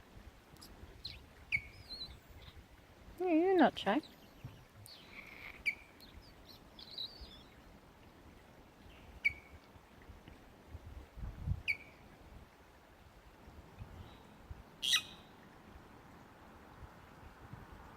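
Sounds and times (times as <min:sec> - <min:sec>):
wren chirping: 0:01.0 - 0:02.6, 0:03.6 - 0:07.5.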